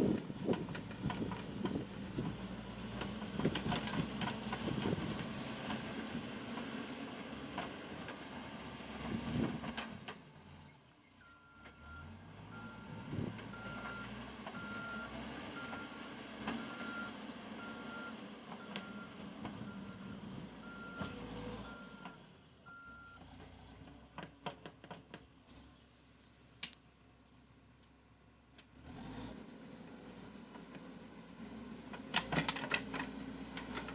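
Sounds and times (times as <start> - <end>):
backhoe diesel engine running: 0.0 - 25.7, 29.6 - 33.9
reversing alarm beeping: 19.7 - 23.2.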